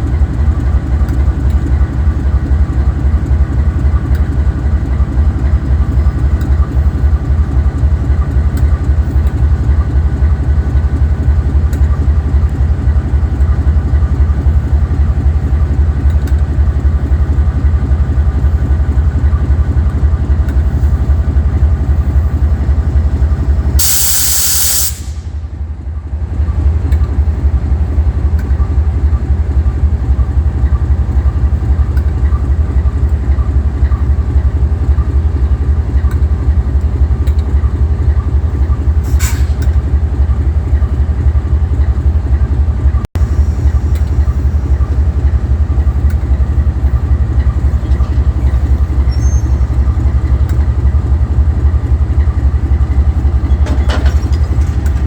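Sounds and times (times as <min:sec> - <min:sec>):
locomotive engine idling: 0:00.0 - 0:55.0
compressed air hissing: 0:23.8 - 0:25.3.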